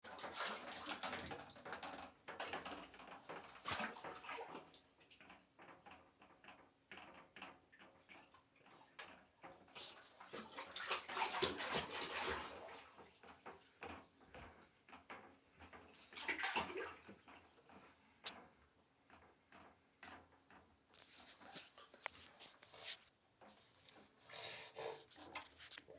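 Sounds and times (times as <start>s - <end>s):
water splashing in a bathtub: 0.0s - 25.9s
small knocks and clicks: 1.0s - 3.8s, 4.5s - 9.8s, 13.2s - 24.2s.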